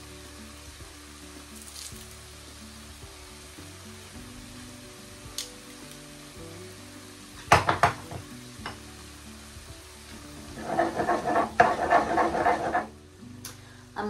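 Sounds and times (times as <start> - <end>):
faint background music: 0.0 - 14.0
meat sizzling in a pan: 0.0 - 14.0
spoon stirring and scraping: 10.4 - 12.9.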